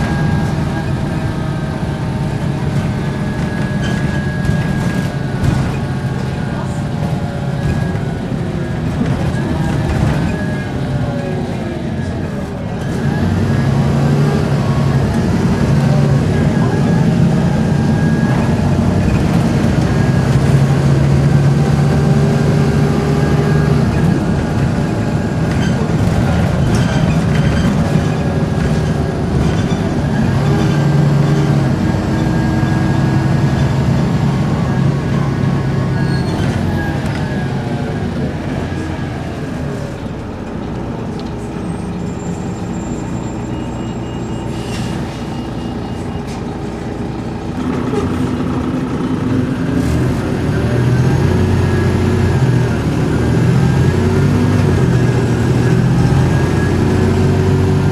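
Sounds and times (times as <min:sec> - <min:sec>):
bus diesel engine running: 0:00.0 - 0:57.9.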